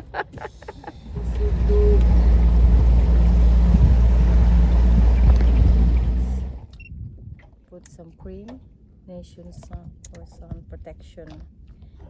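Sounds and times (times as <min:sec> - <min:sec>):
engine running steadily: 0:00.0 - 0:06.7
wind rumble on microphone: 0:01.0 - 0:12.0.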